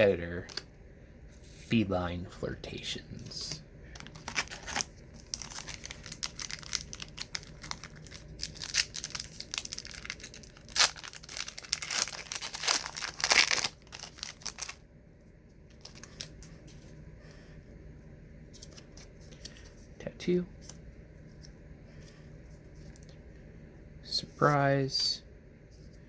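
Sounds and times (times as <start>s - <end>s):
wrapper crinkling and tearing: 4.0s - 14.8s, 15.7s - 16.5s.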